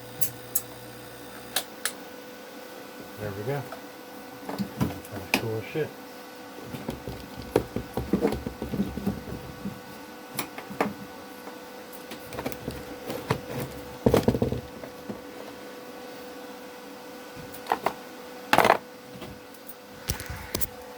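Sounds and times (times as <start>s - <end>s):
compressor humming: 19.1s - 20.9s.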